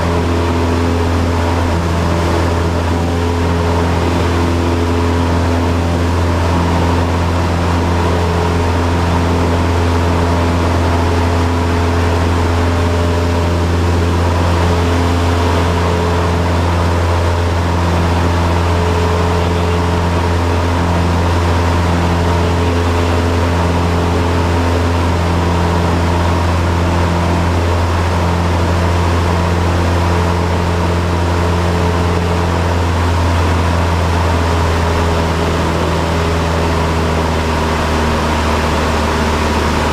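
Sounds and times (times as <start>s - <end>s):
propeller plane engine droning: 0.0s - 39.9s.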